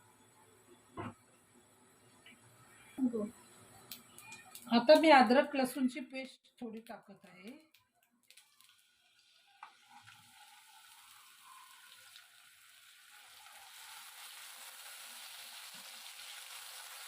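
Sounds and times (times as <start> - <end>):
paste sizzling in hot oil: 8.2 - 17.0.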